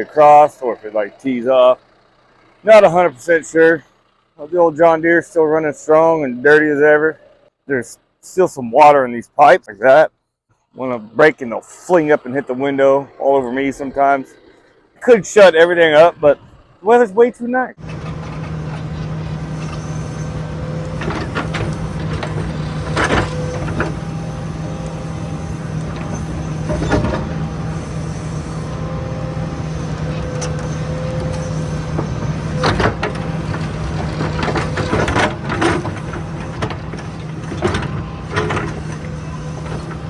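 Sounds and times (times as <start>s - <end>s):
backhoe diesel engine running: 0.0s - 10.1s, 10.7s - 40.0s
sharp knocks and clanks: 17.8s - 40.0s.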